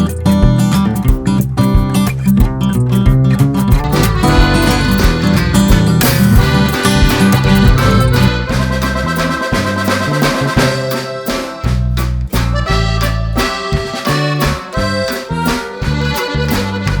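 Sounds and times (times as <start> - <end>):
upbeat music with accordion melody: 3.7 - 17.0.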